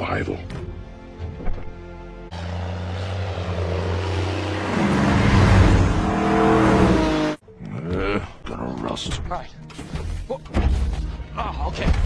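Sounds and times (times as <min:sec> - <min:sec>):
vehicle engines running loudly: 0:01.9 - 0:07.4.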